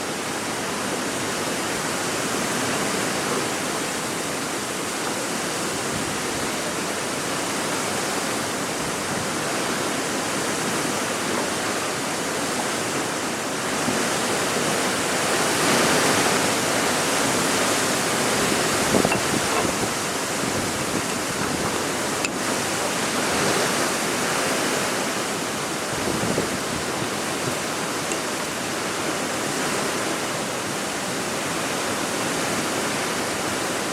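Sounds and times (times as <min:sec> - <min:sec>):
strong wind blowing: 0:15.6 - 0:23.5, 0:25.6 - 0:29.8.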